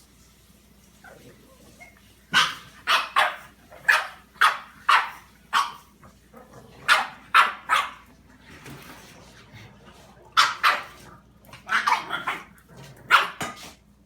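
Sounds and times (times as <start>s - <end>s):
dog barking: 2.3s - 5.9s, 6.8s - 8.0s, 10.4s - 11.0s, 11.7s - 12.5s, 13.1s - 13.5s.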